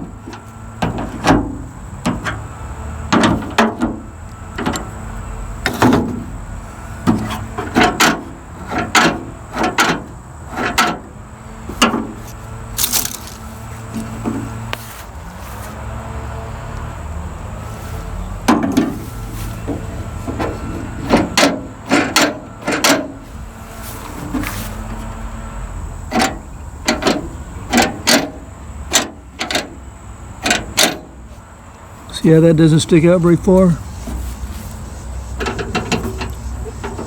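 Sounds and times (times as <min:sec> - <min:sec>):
sharp metal clicks and knocks: 0:12.8 - 0:13.4, 0:26.1 - 0:29.7, 0:30.4 - 0:31.1.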